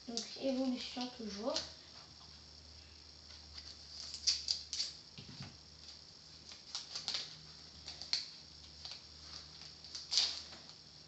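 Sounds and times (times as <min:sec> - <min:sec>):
foil wrapper crinkling: 0:03.6 - 0:05.0, 0:06.4 - 0:10.8.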